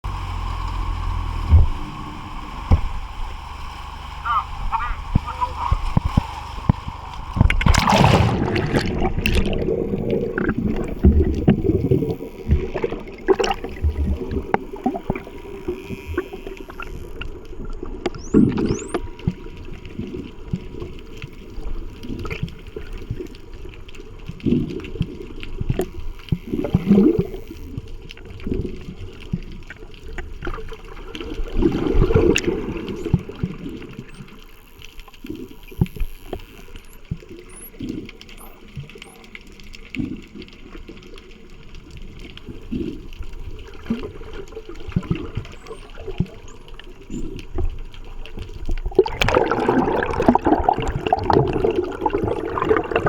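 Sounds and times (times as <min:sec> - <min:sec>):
regulator bubbles gurgling: 0:00.0 - 0:53.0
underwater bubbles churning: 0:00.0 - 0:53.0
dolphin whistles: 0:18.2 - 0:19.1.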